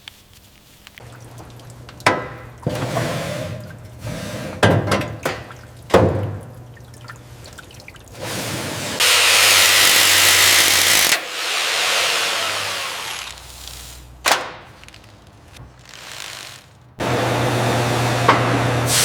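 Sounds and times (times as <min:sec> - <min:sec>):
loud tool hiss: 0:09.0 - 0:14.1, 0:15.8 - 0:16.8.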